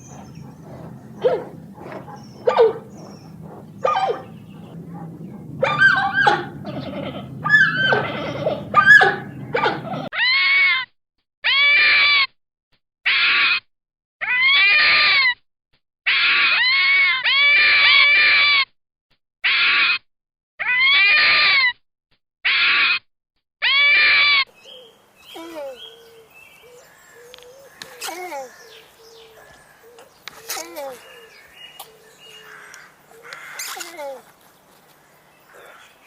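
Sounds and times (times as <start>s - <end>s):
noisy overlapping animal sound: 0.0s - 10.1s, 23.7s - 36.0s
animal drawn-out calls: 0.0s - 10.2s, 25.4s - 34.4s, 35.5s - 36.0s.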